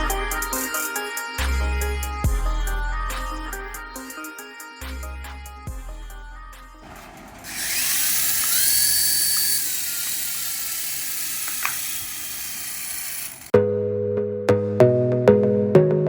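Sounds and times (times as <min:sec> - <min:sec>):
music: 0:00.0 - 0:06.8, 0:13.5 - 0:16.0
toy electric motor whirring: 0:06.8 - 0:13.5.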